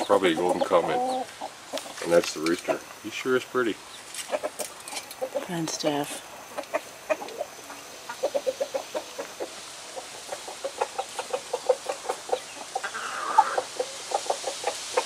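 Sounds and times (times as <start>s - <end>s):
chickens clucking: 0.0s - 15.0s
harsh chicken call: 6.7s - 15.0s.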